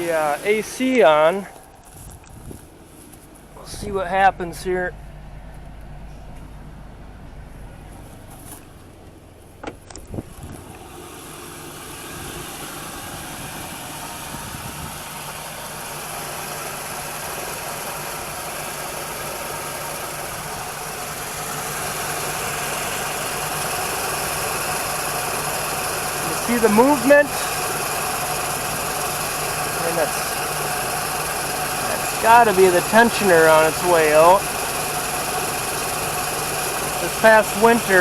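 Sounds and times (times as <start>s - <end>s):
air conditioning rushing noise: 0.0s - 11.1s, 29.7s - 38.0s
car engine idling: 0.0s - 38.0s.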